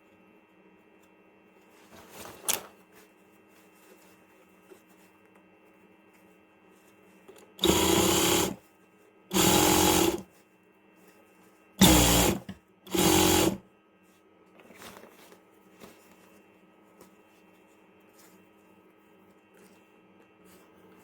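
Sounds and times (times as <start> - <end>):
electric sewing machine stitching: 7.6 - 8.6, 9.3 - 10.2, 11.8 - 13.6.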